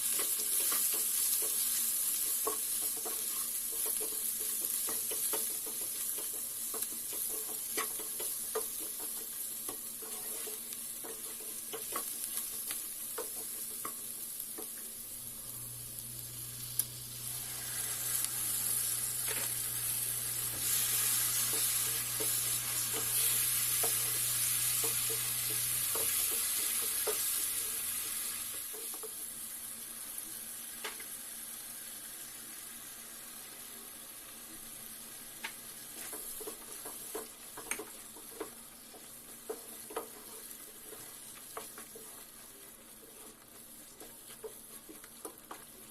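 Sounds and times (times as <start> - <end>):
food sizzling in a pan: 0.0 - 45.9
spoon scraping a pan: 0.1 - 14.0, 20.5 - 27.9.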